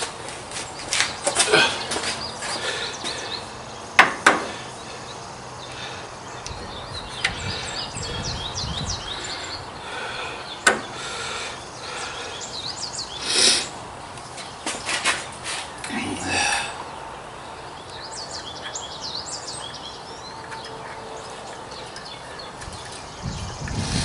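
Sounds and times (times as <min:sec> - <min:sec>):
rustle: 0:08.9 - 0:24.0.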